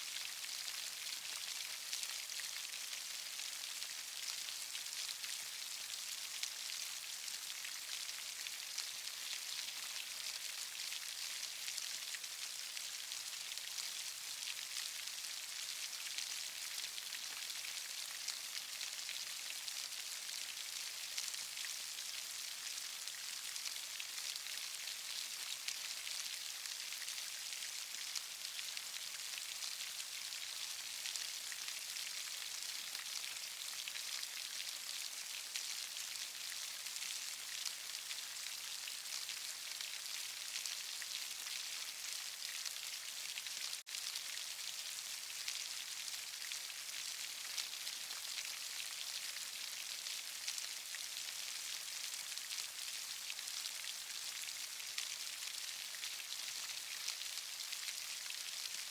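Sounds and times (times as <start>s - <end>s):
steady rain hiss: 0.0s - 0.4s.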